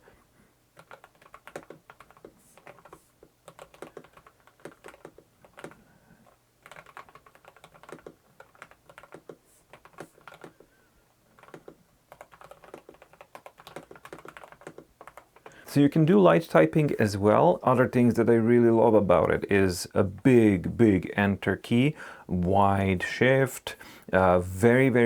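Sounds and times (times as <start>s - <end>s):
mechanical keyboard typing: 0.8s - 10.7s, 11.4s - 15.6s.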